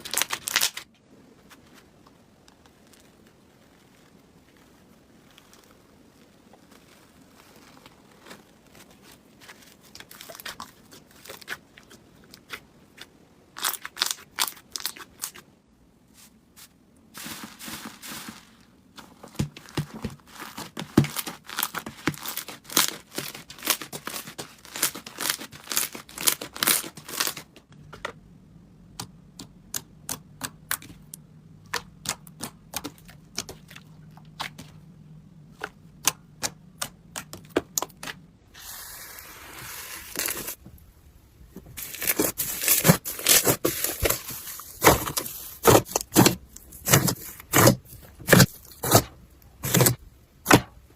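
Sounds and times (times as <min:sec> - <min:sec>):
slime crackling and popping: 0:20.3 - 0:27.6, 0:41.8 - 0:50.7.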